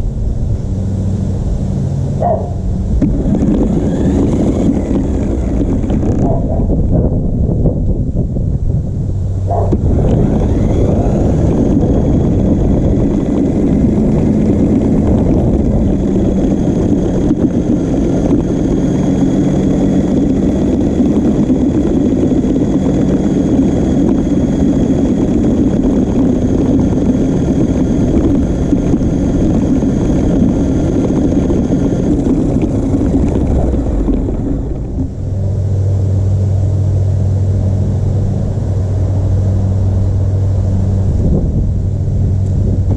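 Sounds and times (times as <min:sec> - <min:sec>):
rumble of tyres and chassis: 0:00.0 - 0:42.9
toy electric motor whine: 0:03.0 - 0:06.8, 0:09.5 - 0:35.3.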